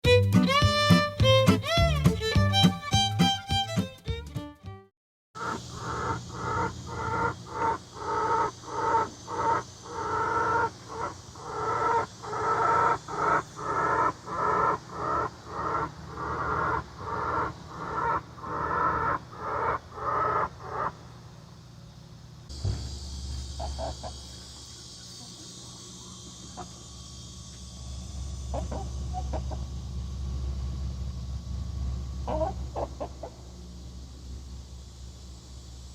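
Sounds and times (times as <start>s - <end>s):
chicken repeated call: 5.4s - 21.0s, 23.6s - 24.4s, 28.5s - 29.6s, 32.2s - 33.4s.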